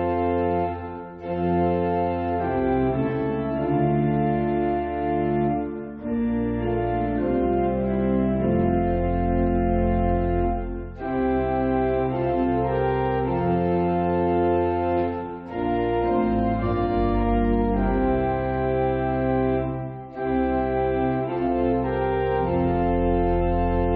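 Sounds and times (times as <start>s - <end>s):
organ chords: 0.0s - 23.9s.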